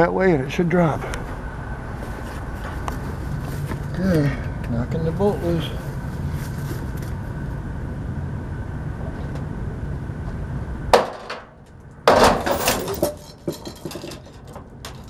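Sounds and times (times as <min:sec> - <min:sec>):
steady low hum: 0:00.0 - 0:15.0
heavy metal object crashing down: 0:11.0 - 0:14.2
metal clanks: 0:12.1 - 0:15.0.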